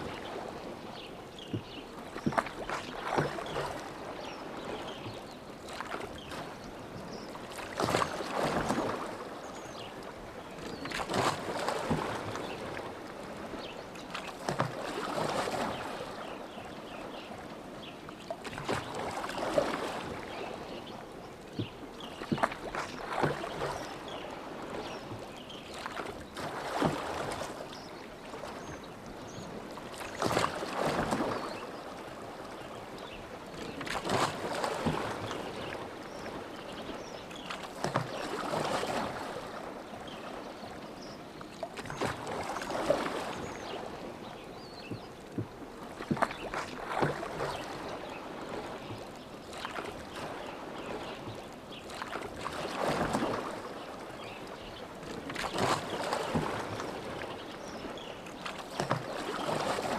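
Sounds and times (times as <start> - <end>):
oars splashing through water: 0.0 - 59.9
water lapping: 0.0 - 59.9
oar knocks: 1.4 - 3.6, 21.6 - 23.4, 44.8 - 47.5.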